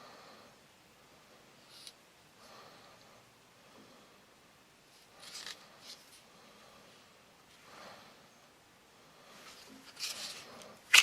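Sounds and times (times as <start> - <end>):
soft scrapes of knife sheath: 9.4 - 10.8.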